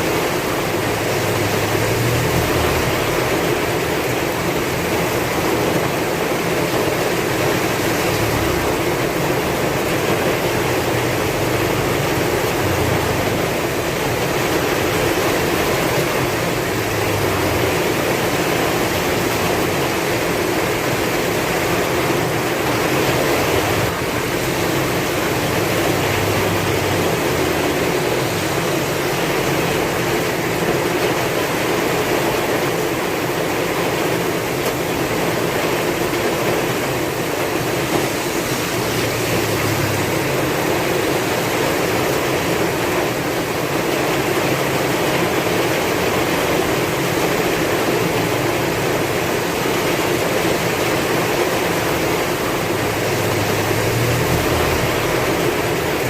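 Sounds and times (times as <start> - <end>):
heavy rain: 0.0 - 56.0.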